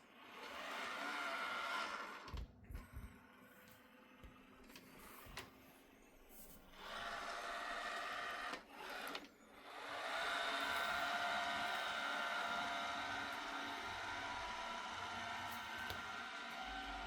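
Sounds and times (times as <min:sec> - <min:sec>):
robot vacuum motors whirring: 0:00.0 - 0:17.0.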